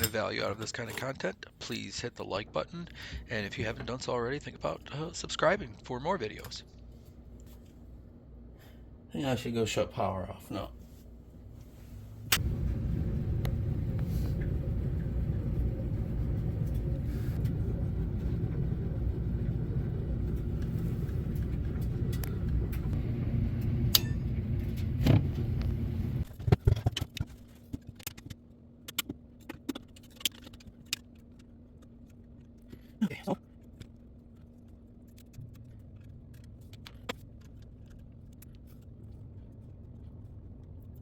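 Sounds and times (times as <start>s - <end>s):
steady low motor rumble: 0.0s - 26.3s.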